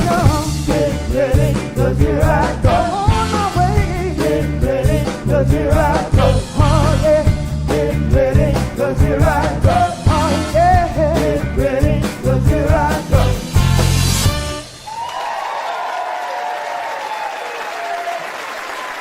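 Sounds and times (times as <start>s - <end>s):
soul band with singers: 0.0s - 14.3s.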